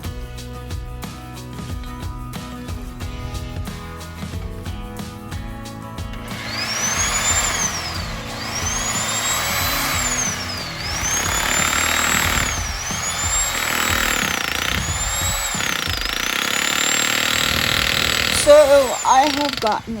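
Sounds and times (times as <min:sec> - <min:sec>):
hammer drill boring into concrete: 0:06.2 - 0:20.0.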